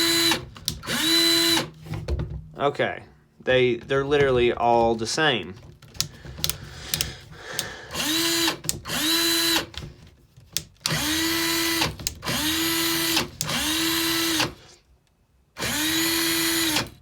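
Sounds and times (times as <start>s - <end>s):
cordless drill motor whine: 0.0s - 1.7s, 7.9s - 9.8s, 10.9s - 14.6s, 15.6s - 17.0s
drill trigger clicks: 0.0s - 1.7s, 6.0s - 9.8s, 10.6s - 14.6s, 15.6s - 17.0s.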